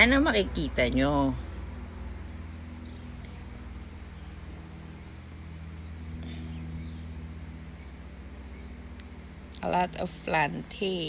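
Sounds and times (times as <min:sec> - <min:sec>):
low mechanical hum: 0:00.0 - 0:11.0
bird chirps: 0:02.4 - 0:03.4, 0:04.0 - 0:05.0, 0:05.8 - 0:08.8.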